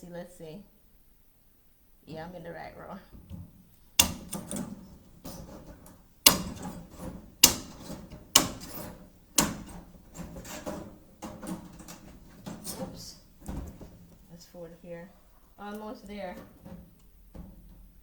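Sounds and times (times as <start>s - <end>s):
snips cutting wire: 4.0s - 13.8s.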